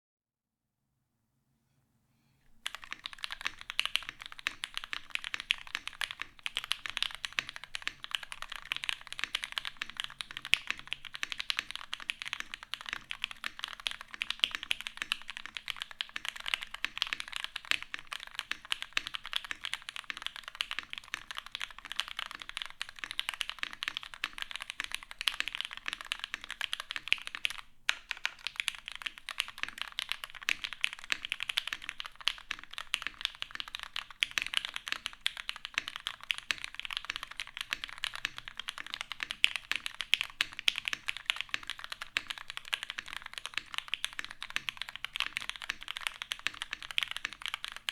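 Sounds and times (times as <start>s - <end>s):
mechanical keyboard typing: 2.6s - 47.9s.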